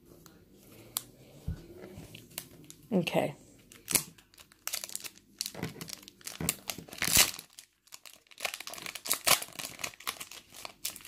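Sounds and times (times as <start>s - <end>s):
wrappers tearing and crinkling: 3.7s - 11.0s.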